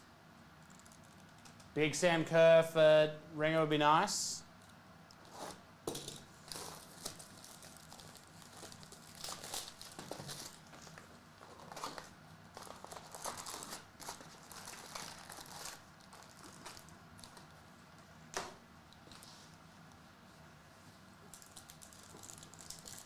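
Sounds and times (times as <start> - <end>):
wrappers crinkling and tearing: 6.4 - 17.5, 21.3 - 23.0.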